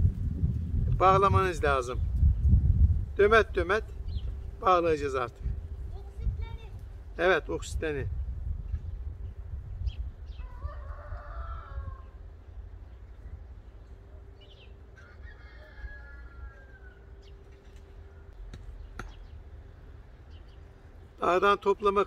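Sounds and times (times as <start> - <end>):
steady low rumble: 0.0 - 10.4
rooster crowing: 10.4 - 12.4, 14.8 - 18.3.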